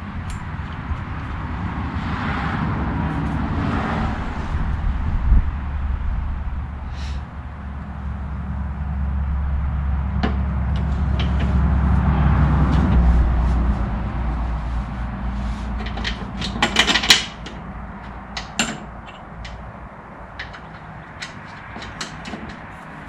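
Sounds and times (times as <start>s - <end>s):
steady low hum: 0.0s - 23.0s
metal clattering: 10.2s - 12.0s, 15.4s - 23.0s
metal parts and tools clinking: 15.5s - 23.0s.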